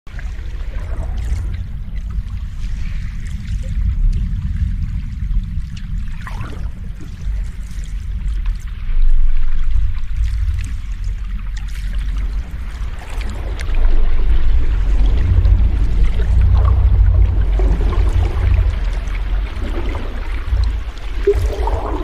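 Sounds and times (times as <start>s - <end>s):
water splashing and trickling: 0.1s - 22.0s
ocean waves washing in: 12.0s - 22.0s.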